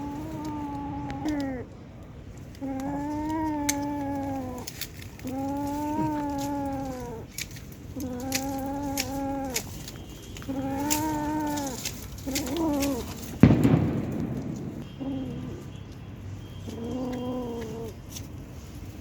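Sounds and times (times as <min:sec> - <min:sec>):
cat meowing: 0:00.0 - 0:01.7, 0:02.6 - 0:13.5, 0:14.7 - 0:15.8, 0:16.6 - 0:18.0.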